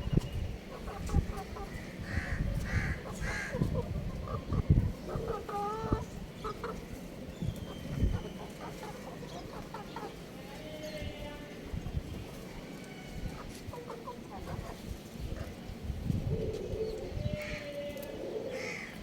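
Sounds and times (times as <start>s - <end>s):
young rooster chirping: 7.4s - 10.2s.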